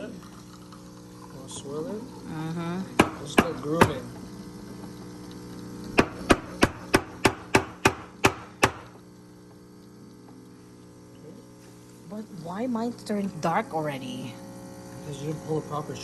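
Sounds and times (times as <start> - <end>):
sharp knocks: 6.0 - 8.9.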